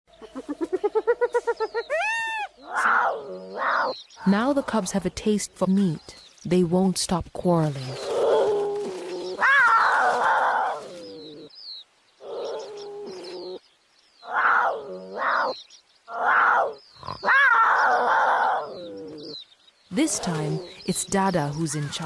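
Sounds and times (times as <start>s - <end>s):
cubs squabbling with harsh calls: 0.1s - 4.7s, 7.9s - 11.5s, 14.2s - 22.0s.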